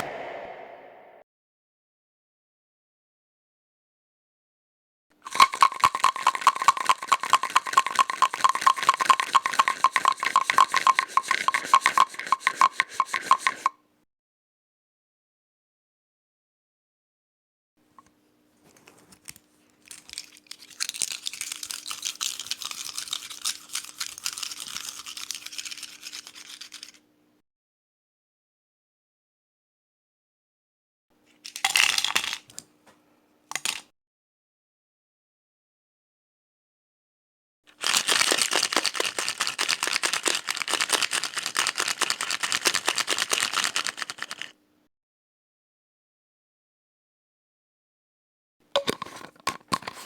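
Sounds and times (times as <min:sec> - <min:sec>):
fast scratching or scrubbing: 0:20.9 - 0:27.0.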